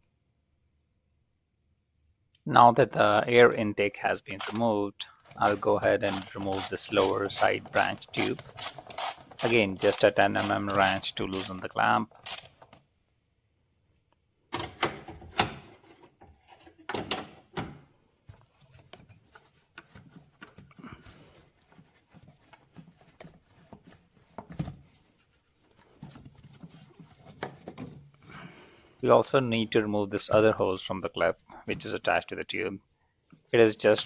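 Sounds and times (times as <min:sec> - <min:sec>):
wrench and hose clamp clicking: 0:04.4 - 0:04.6, 0:05.3 - 0:11.6.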